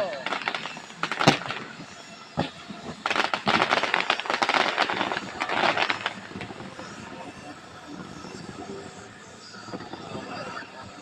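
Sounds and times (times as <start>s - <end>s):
fireworks crackling pops: 0.0s - 11.0s
firework bang: 0.2s - 8.7s.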